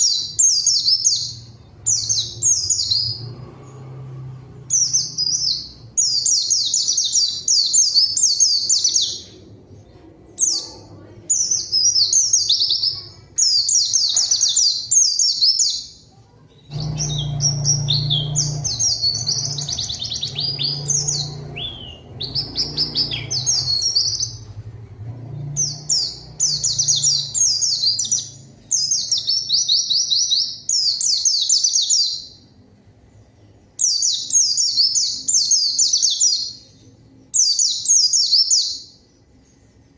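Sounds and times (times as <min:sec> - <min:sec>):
bird chattering trills: 0:16.6 - 0:24.6.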